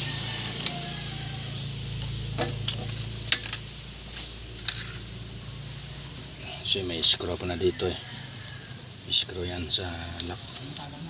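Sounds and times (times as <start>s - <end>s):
metal tools clinking on brake parts: 0.0s - 3.6s.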